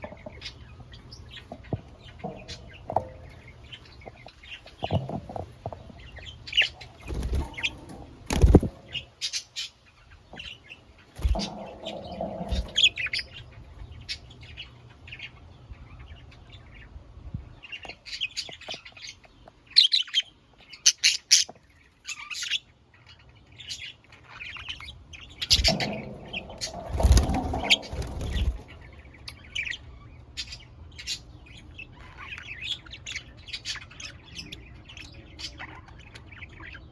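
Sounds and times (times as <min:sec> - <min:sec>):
budgerigars chirping: 0:00.0 - 0:16.9, 0:17.6 - 0:36.9
wing flapping and rustling: 0:06.8 - 0:09.2, 0:11.1 - 0:13.2, 0:25.5 - 0:28.9.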